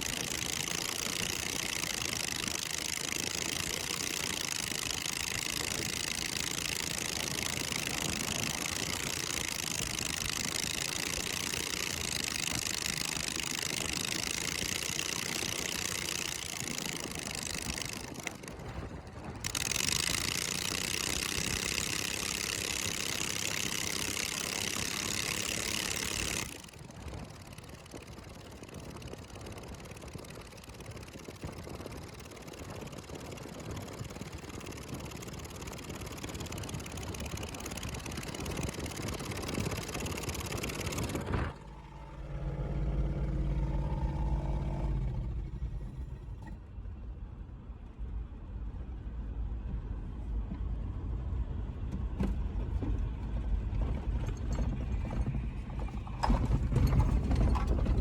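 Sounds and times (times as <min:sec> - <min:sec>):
lawn mower engine running: 0:00.0 - 0:46.7, 0:52.3 - 0:58.0.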